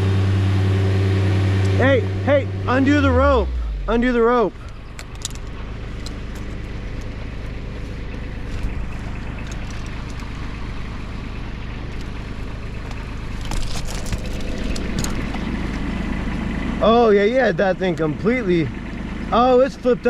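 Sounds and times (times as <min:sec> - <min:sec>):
engine idling: 0:00.0 - 0:20.0
light clicks and rattles: 0:04.6 - 0:07.2, 0:08.5 - 0:10.4.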